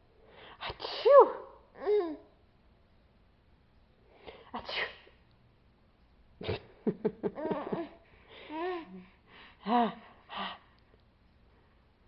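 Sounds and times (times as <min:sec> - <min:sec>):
baby giggling: 0:06.5 - 0:09.0.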